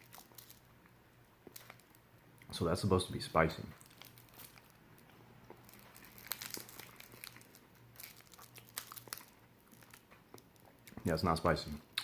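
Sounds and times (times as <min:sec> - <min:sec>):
ice pop crunching: 0:03.8 - 0:11.0.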